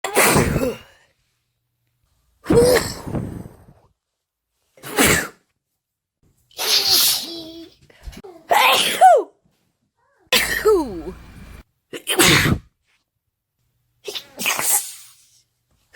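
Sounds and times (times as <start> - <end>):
woman sneezing: 8.5 - 9.3, 10.3 - 11.2, 12.0 - 12.7, 14.0 - 15.1.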